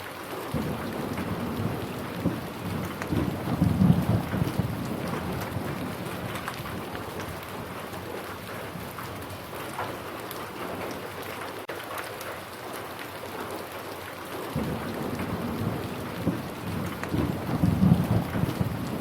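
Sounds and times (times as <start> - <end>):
rain pattering: 0.0 - 19.0
low rumble of thunder: 0.5 - 10.0, 14.6 - 19.0.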